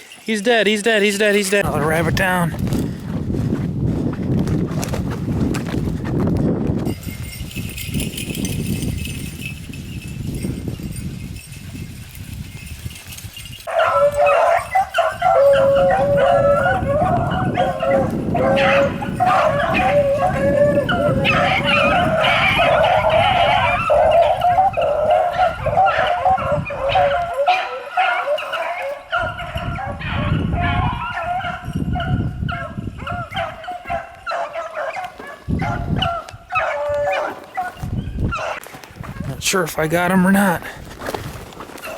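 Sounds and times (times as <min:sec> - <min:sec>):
dogs baying and howling: 0:13.6 - 0:39.3, 0:41.6 - 0:41.9.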